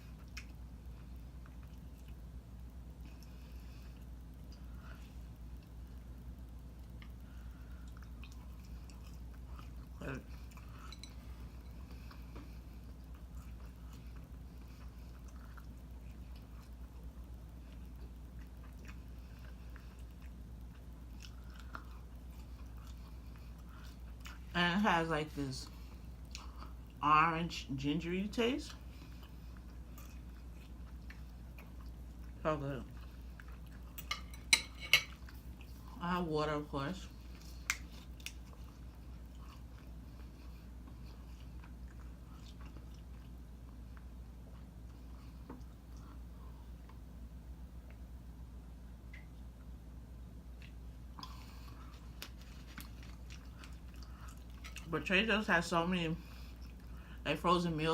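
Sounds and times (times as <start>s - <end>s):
person chewing food: 0.0s - 24.5s, 25.6s - 27.0s, 28.7s - 36.0s, 37.1s - 54.9s, 56.2s - 57.2s
steady low hum: 0.0s - 57.9s
chewing mouth clicks: 7.8s - 11.2s.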